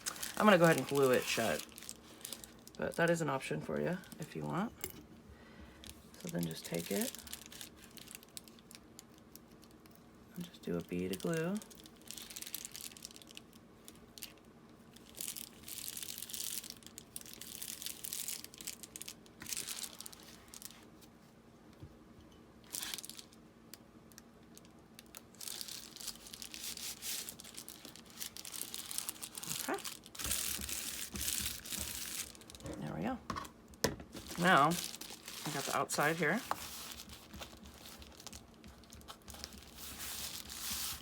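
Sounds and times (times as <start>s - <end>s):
paper and mailer crinkling: 0.0s - 3.2s, 6.2s - 8.7s, 25.2s - 33.0s, 34.1s - 41.0s
faint steady hum: 0.0s - 41.0s.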